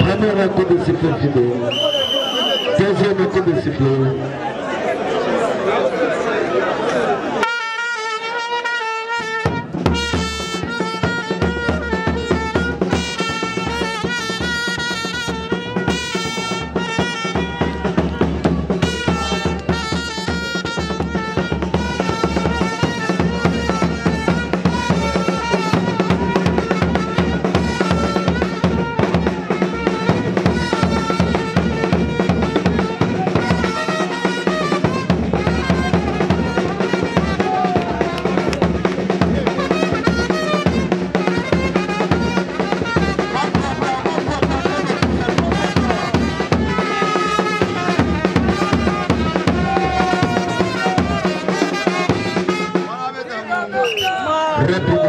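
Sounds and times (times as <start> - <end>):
fast drum beat: 9.5 - 53.0.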